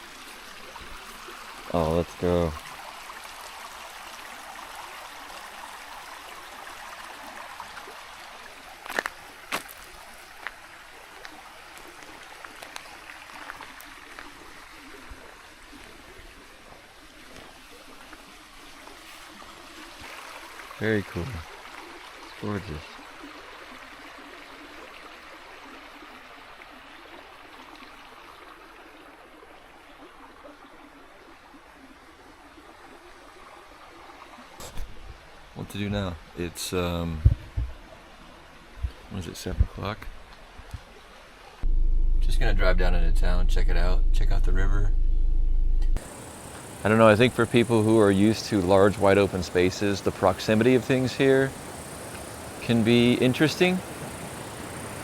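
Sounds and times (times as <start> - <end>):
stream water flowing: 0.0 - 35.6, 37.8 - 39.1, 46.0 - 55.0
faint ticks: 46.0 - 55.0.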